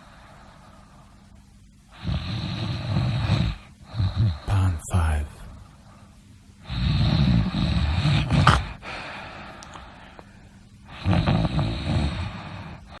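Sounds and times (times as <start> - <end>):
snort: 1.9 - 4.5, 6.6 - 9.1, 10.9 - 13.0
person snoring: 1.9 - 5.6, 6.7 - 9.1, 10.9 - 13.0.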